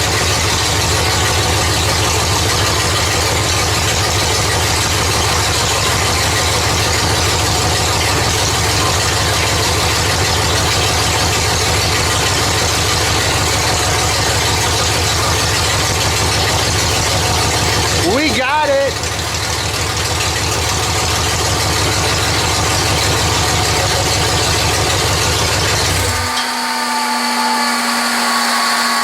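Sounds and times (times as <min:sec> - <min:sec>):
engine idling: 0:00.0 - 0:29.0.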